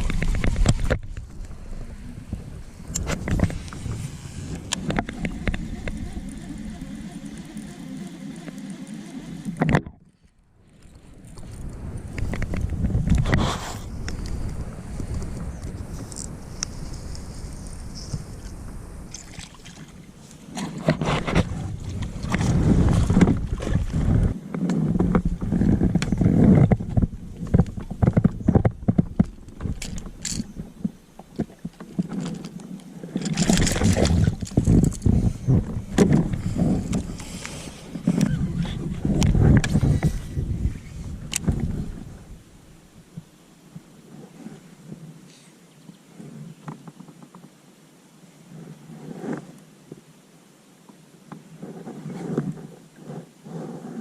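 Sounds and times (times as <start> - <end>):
rushing water: 18.1 - 24.4.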